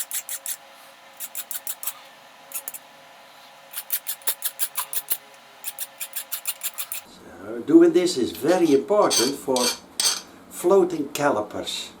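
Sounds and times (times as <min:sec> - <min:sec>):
hand file rasping: 0:00.0 - 0:00.6, 0:01.2 - 0:02.8, 0:03.7 - 0:07.0.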